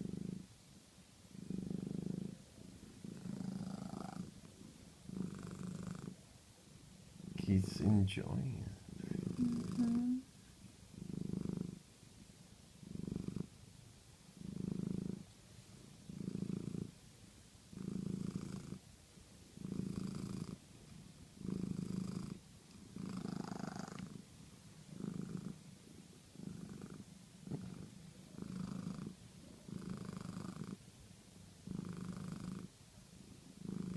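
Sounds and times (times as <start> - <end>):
cat purring loudly: 0.0 - 0.5, 1.3 - 6.2, 8.4 - 10.2, 10.9 - 11.9, 12.8 - 13.6, 14.4 - 15.3, 16.0 - 17.0, 17.7 - 18.8, 19.6 - 30.8, 31.6 - 32.8, 33.4 - 33.9.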